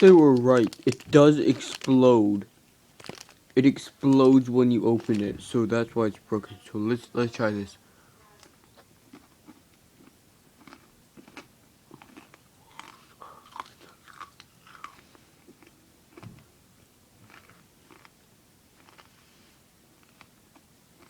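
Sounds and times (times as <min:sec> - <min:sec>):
chewing chocolate bar crunches: 0:00.0 - 0:02.2, 0:03.0 - 0:05.3, 0:08.4 - 0:16.3, 0:17.2 - 0:19.2.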